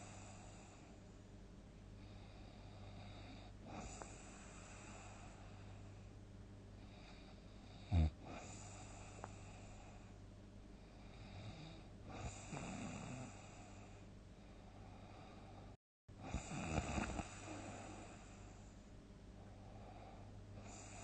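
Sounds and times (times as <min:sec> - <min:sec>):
person snoring heavily: 0:11.1 - 0:13.8, 0:16.2 - 0:18.4
loud snort: 0:16.2 - 0:18.0.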